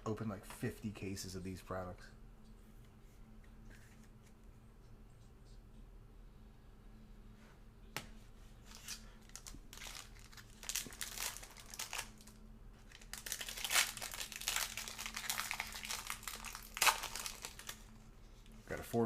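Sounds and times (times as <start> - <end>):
plastic wrapping crinkling and tearing: 8.6 - 18.0.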